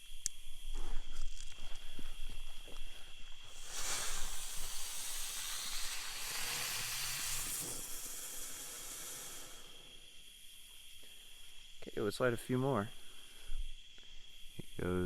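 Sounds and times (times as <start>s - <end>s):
firework spraying sparks hiss: 3.4s - 10.9s.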